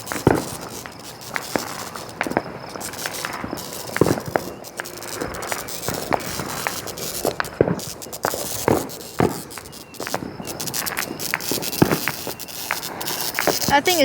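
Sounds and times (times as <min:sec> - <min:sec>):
sharp cracks and pops: 0:00.0 - 0:14.0.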